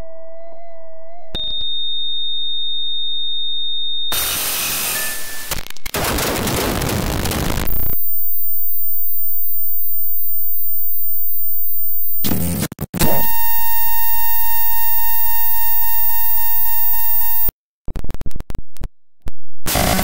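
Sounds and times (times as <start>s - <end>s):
choppy glitch bursts: 4.1s - 8.2s, 12.0s - 18.4s, 19.7s - 20.0s
noisy crackle: 4.2s - 10.0s, 15.7s - 18.9s, 19.7s - 20.0s
pulsing buzzing electronic tone: 13.0s - 17.5s.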